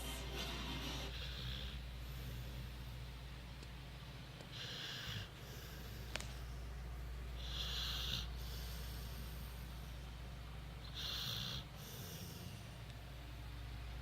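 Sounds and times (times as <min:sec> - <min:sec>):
dog snoring: 0:00.0 - 0:03.0, 0:04.5 - 0:06.5, 0:07.4 - 0:09.7, 0:10.8 - 0:12.8
steady low hum: 0:00.0 - 0:14.0.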